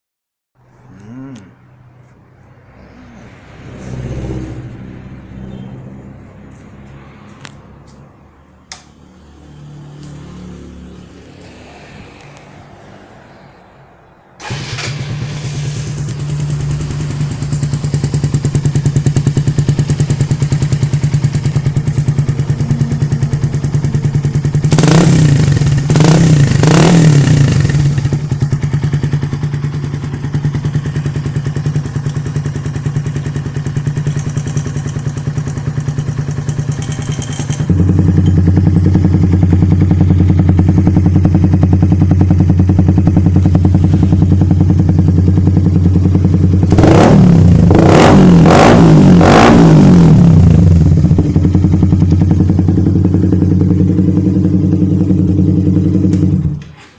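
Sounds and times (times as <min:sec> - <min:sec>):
motorcycle engine idling: 0:14.4 - 0:47.7, 0:50.0 - 0:56.7
engine revving blips: 0:21.6 - 0:28.4, 0:46.6 - 0:56.7.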